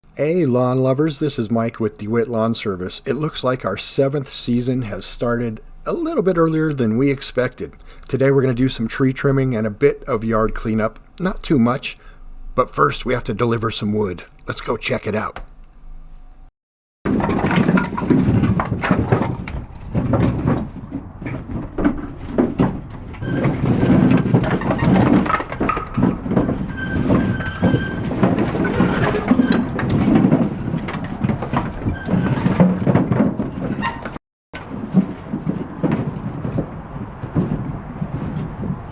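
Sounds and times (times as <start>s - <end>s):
firewood knocking onto pile: 17.1s - 33.8s.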